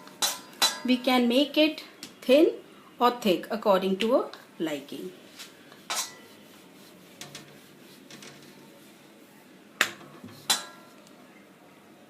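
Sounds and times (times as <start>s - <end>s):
utensils clacking on hard surface: 0.0s - 1.0s, 5.9s - 6.3s, 9.9s - 11.0s.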